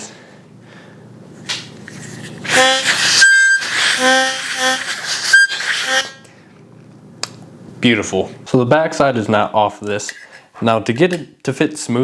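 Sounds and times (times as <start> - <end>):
harmonica playing: 2.5 - 6.3.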